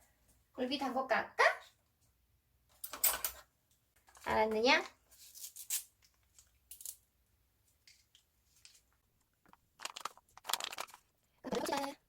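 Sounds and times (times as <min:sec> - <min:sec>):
packet crinkling as torn open: 0:09.4 - 0:12.0.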